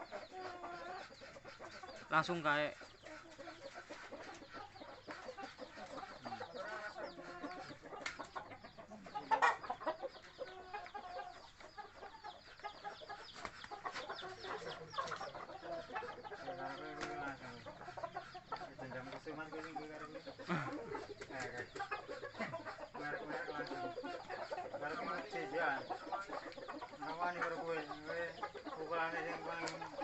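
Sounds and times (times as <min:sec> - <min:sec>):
chickens clucking: 0:00.0 - 0:30.0.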